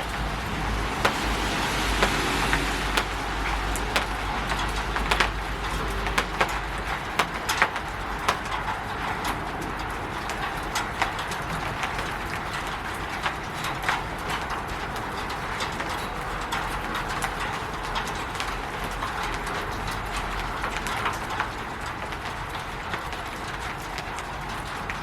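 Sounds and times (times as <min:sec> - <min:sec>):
drips ticking: 0:00.0 - 0:22.9
rain pattering on a roof: 0:00.0 - 0:25.0.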